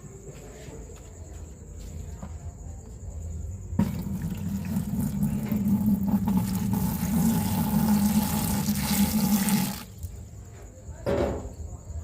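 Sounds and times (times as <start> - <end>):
water running: 3.8 - 10.1.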